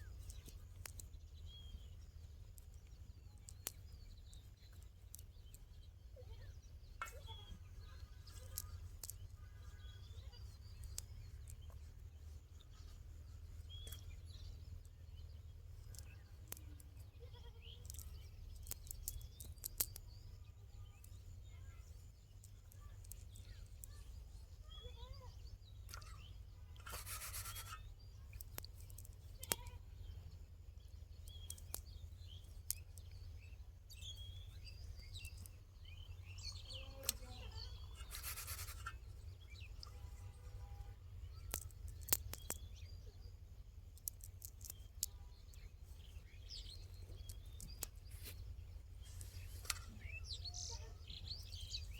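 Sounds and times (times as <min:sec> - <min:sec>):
faint bird chirps: 0:00.0 - 0:51.9
small clicks and knocks: 0:00.1 - 0:01.2, 0:02.5 - 0:24.1, 0:24.9 - 0:29.9, 0:31.1 - 0:33.3, 0:36.4 - 0:40.0, 0:41.3 - 0:50.8
rustling: 0:26.8 - 0:27.9, 0:37.0 - 0:39.8.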